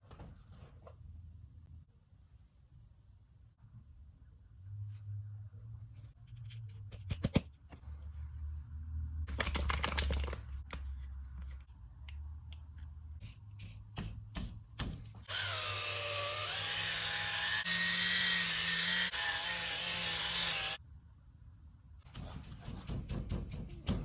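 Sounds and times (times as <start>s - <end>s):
power drill whining: 15.3s - 20.8s.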